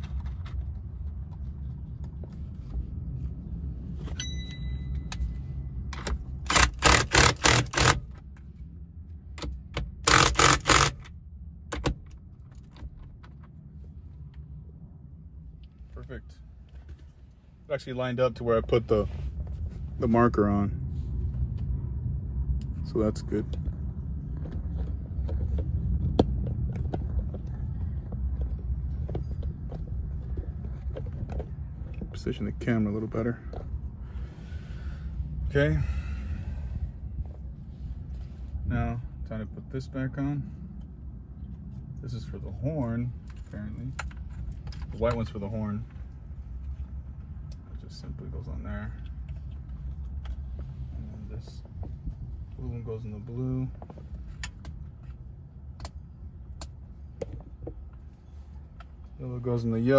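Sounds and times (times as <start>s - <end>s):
low steady rumble: 0.0s - 59.9s
faint steady beep: 4.2s - 5.6s
ratchet wrench clicking: 6.5s - 8.1s, 10.1s - 11.0s.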